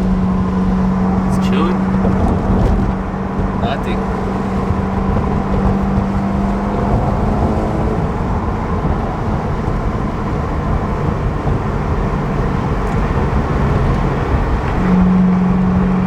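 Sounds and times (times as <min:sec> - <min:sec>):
tyres and engine rumble: 0:00.0 - 0:16.0
steady hum: 0:03.7 - 0:15.0.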